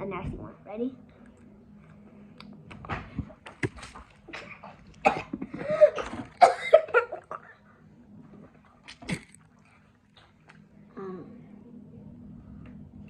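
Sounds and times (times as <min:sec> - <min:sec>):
girls coughing and gagging: 0:04.3 - 0:07.7.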